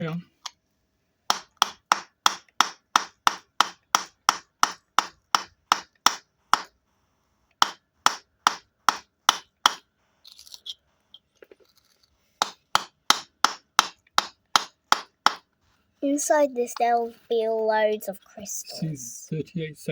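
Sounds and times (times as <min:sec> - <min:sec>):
hammer tapping on stone: 0:01.3 - 0:06.7, 0:07.6 - 0:09.8, 0:12.4 - 0:15.4.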